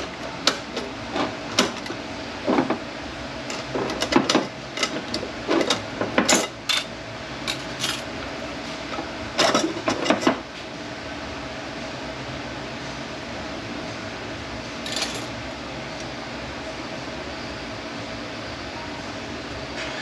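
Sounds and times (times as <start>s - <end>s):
metal parts clinking and knocking: 14.9s - 15.3s.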